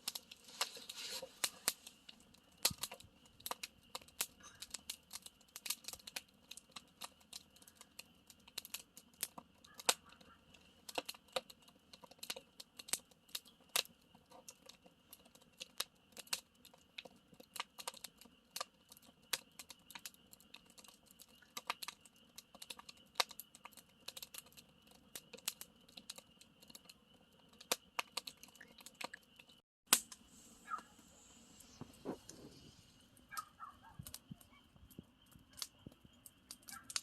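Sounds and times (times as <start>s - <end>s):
faint steady hiss: 0.0s - 4.8s, 28.5s - 36.8s
campfire crackling: 0.0s - 37.0s.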